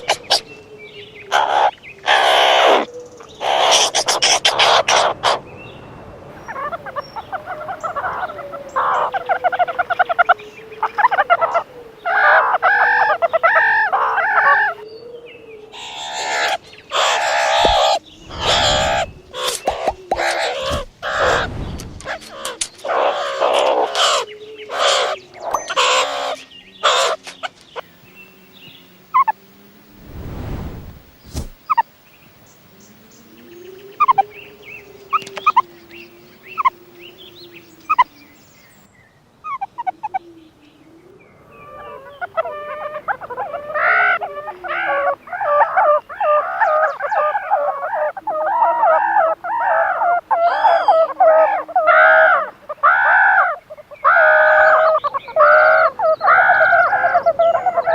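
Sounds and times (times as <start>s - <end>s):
meerkats calling: 0.0s - 0.6s, 1.3s - 5.5s, 6.4s - 14.8s, 15.7s - 27.6s, 35.1s - 35.7s, 41.6s - 57.9s
brief rushing noise: 29.9s - 31.6s.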